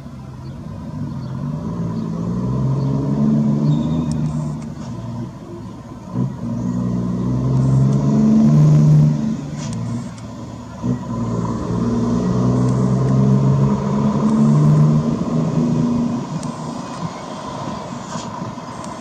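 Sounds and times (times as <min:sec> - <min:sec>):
truck diesel engine rumbling: 0:00.0 - 0:19.0.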